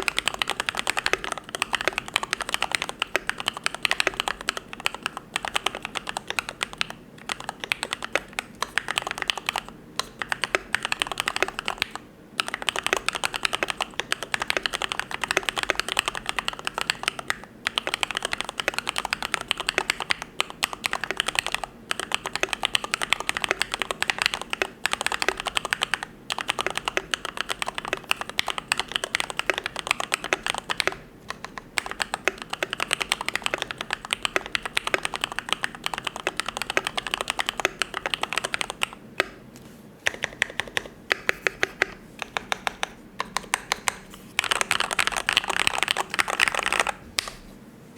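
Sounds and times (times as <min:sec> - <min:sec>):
mechanical keyboard typing: 0:00.0 - 0:39.4, 0:40.0 - 0:47.0.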